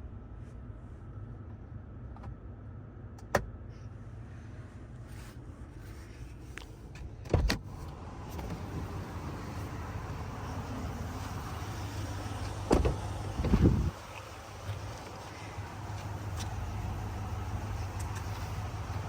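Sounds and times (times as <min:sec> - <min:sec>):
road and drivetrain drone: 0:01.0 - 0:19.0
tyre and wind hiss: 0:08.2 - 0:19.0.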